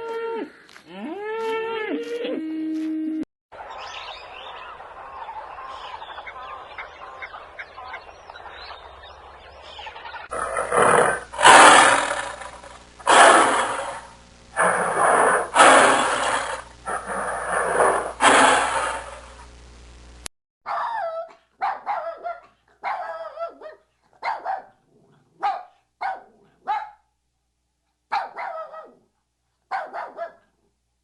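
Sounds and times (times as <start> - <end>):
big cat roaring: 10.3 - 19.2.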